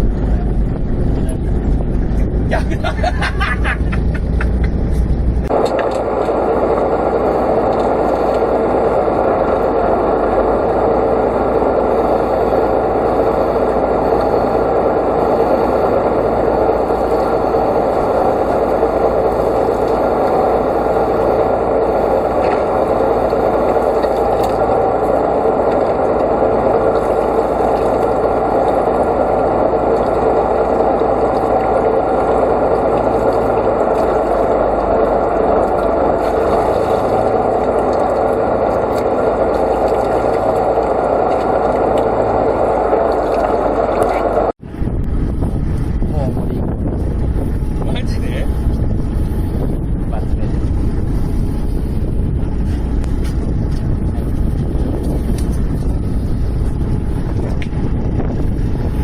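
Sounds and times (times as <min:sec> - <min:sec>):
engine running steadily: 0:00.0 - 0:59.0.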